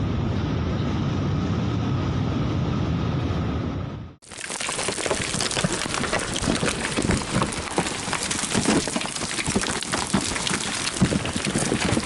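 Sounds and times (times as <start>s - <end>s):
heavy rain pattering: 4.2s - 12.0s.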